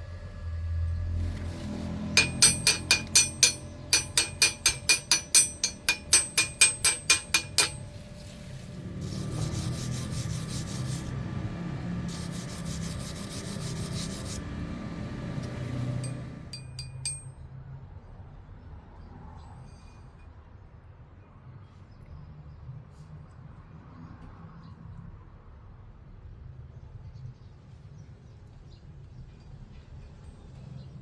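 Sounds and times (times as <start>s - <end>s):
harsh scraping against metal: 1.0s - 11.3s, 12.1s - 14.7s
hammer striking steel: 1.3s - 8.3s, 16.0s - 17.3s.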